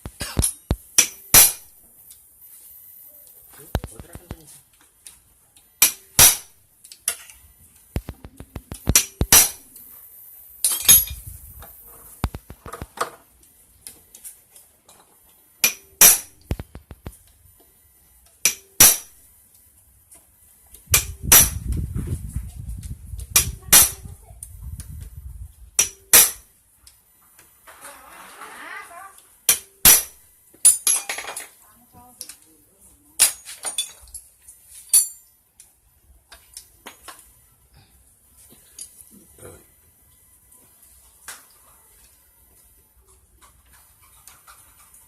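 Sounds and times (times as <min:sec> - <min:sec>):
hammer blows on metal: 0:20.9 - 0:21.8, 0:23.2 - 0:24.2.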